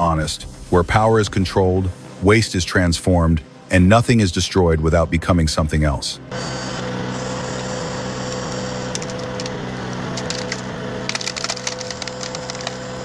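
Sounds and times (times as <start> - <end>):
wood chipper running: 6.3 - 13.0
wood cracking and splintering: 8.9 - 13.0.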